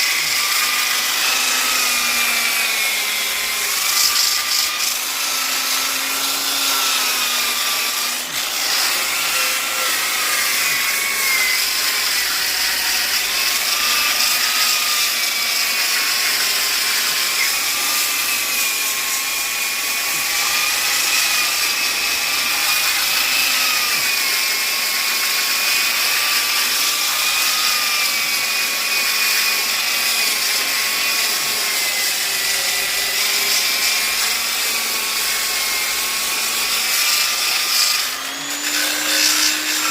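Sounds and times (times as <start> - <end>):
sander motor whine: 38.0 - 39.9.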